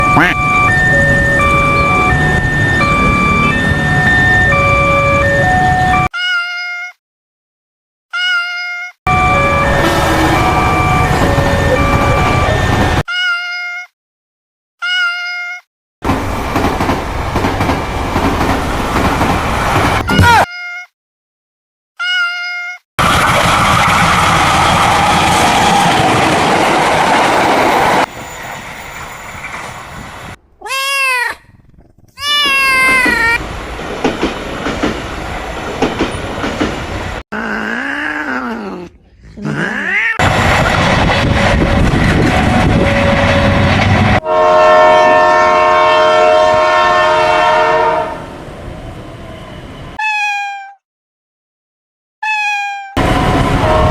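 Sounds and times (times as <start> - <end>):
train noise: 0.0 - 6.1, 9.1 - 13.0, 16.0 - 20.1, 23.0 - 30.6, 32.4 - 37.2, 40.2 - 50.0, 53.0 - 53.9
cat meows: 6.1 - 7.0, 8.1 - 9.0, 13.1 - 13.9, 14.8 - 15.6, 20.1 - 20.9, 22.0 - 22.8, 30.6 - 31.4, 32.2 - 33.4, 37.4 - 40.2, 50.0 - 50.8, 52.2 - 53.0
locomotive horn: 9.1 - 12.9, 40.8 - 48.3, 53.0 - 53.9.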